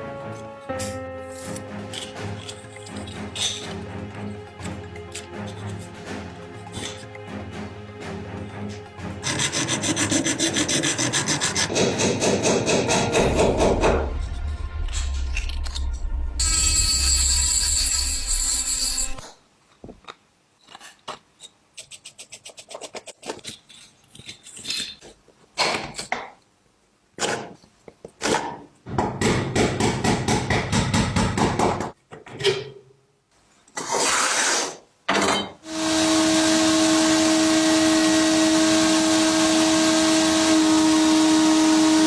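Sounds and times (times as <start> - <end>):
scraping or grinding: 1.3 - 7.5, 13.0 - 19.4
power tool motor humming: 35.7 - 42.0.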